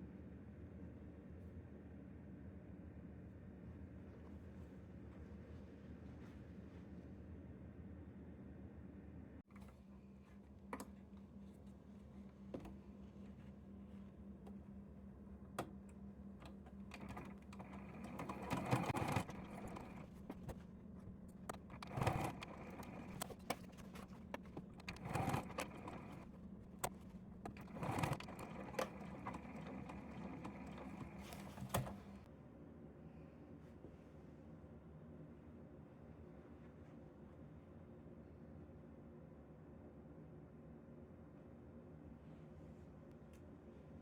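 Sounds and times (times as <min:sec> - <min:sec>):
sewing machine stitching: 0:16.4 - 0:32.3.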